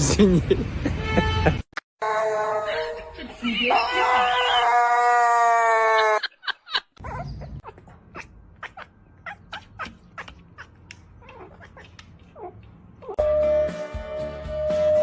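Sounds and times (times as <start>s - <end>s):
pet animal wailing: 7.0s - 13.2s.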